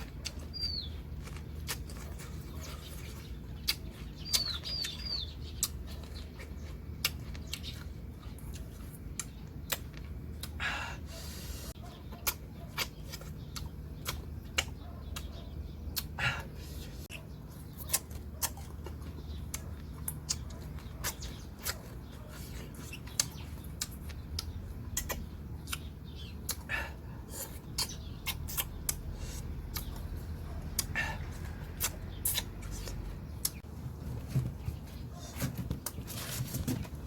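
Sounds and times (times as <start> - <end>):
fruit being bitten and chewed: 0.0 - 37.0
wet mouth smacking: 27.4 - 30.0, 30.6 - 33.6.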